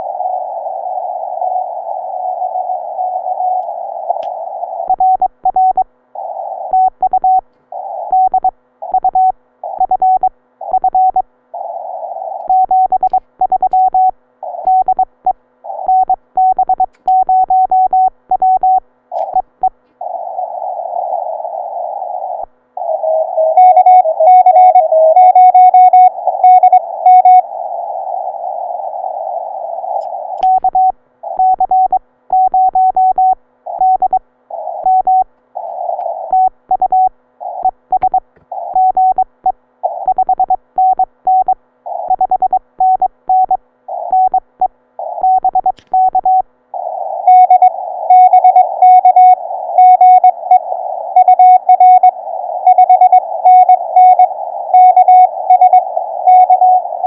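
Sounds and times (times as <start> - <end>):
radio hiss: 7.6 - 8.3, 19.1 - 23.3, 26.1 - 30.6, 34.4 - 36.5, 37.4 - 38.8.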